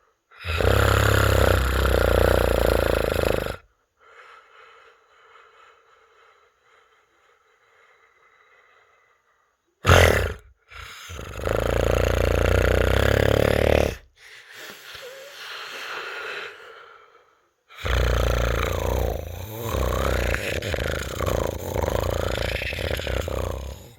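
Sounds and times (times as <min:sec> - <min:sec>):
sharp snort: 0:00.4 - 0:03.6, 0:09.8 - 0:15.4, 0:17.8 - 0:23.9
person snoring: 0:00.4 - 0:03.7, 0:09.8 - 0:16.8, 0:17.7 - 0:23.9.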